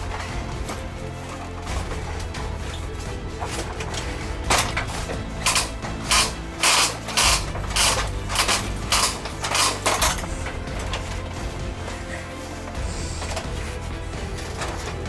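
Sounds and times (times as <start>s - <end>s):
ratchet being cranked: 3.5s - 15.0s.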